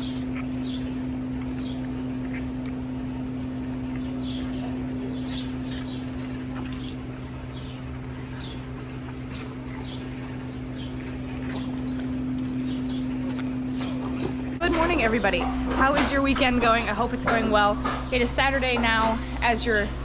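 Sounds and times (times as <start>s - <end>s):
small birds chirping: 0.0s - 15.4s.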